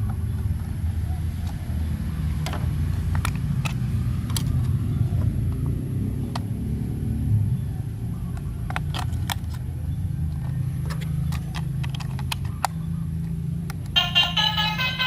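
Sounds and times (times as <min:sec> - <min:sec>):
toy vehicle rumbling: 0:08.2 - 0:15.0
tinny electronic melody: 0:14.0 - 0:15.0.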